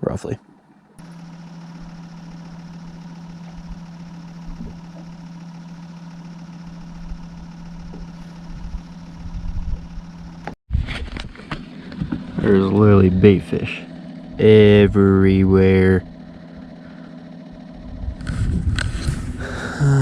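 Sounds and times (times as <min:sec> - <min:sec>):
boat motor humming: 0:00.0 - 0:20.0
uneven rumble with knocks: 0:03.4 - 0:05.2, 0:07.0 - 0:17.2.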